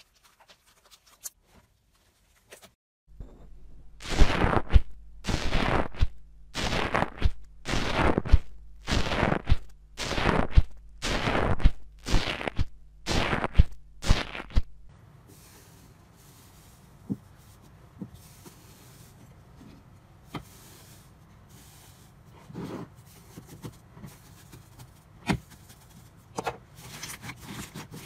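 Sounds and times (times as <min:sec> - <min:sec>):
slime being worked by hand: 0:04.0 - 0:14.7.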